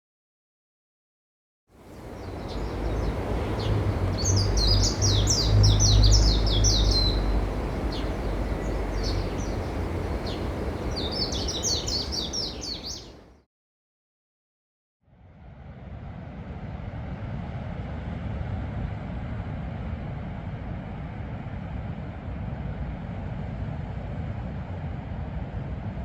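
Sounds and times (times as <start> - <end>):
low outdoor rumble: 1.8 - 13.3
small birds chirping: 1.8 - 13.4.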